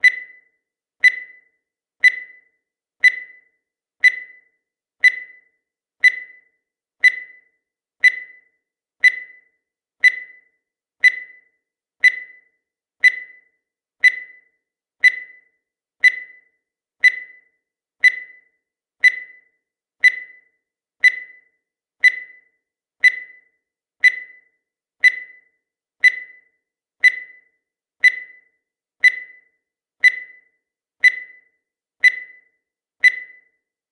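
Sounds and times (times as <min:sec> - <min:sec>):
short high timer blips: 0:02.0 - 0:02.4, 0:03.0 - 0:03.4, 0:04.0 - 0:07.4.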